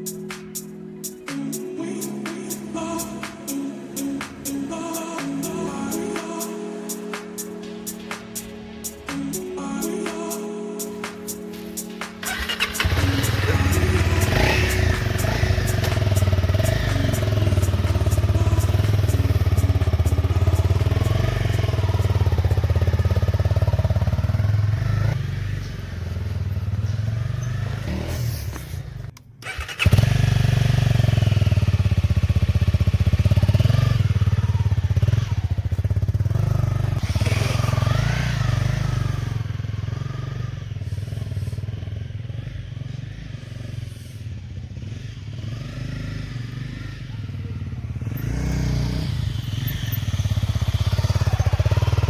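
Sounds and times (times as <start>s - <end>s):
motorcycle engine revving: 11.6s - 52.0s.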